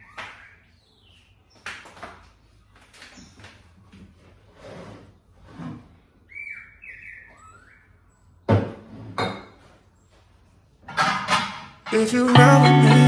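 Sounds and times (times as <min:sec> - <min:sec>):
high chirps sliding down in pitch: 0:12.3 - 0:13.0.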